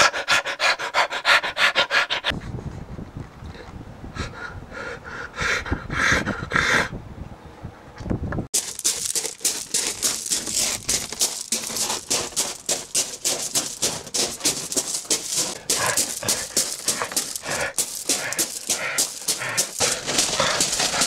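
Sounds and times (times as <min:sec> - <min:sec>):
person panting heavily: 0:04.2 - 0:06.9, 0:09.1 - 0:21.0.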